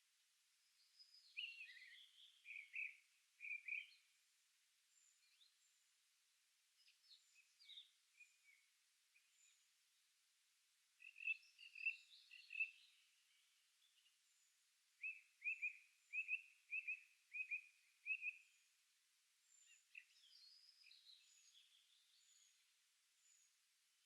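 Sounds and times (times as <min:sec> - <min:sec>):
songbirds singing: 0:00.6 - 0:04.3, 0:04.9 - 0:06.0, 0:06.7 - 0:10.1, 0:11.0 - 0:18.8, 0:19.4 - 0:23.6
distant high bird calls: 0:01.4 - 0:03.9, 0:15.0 - 0:18.5.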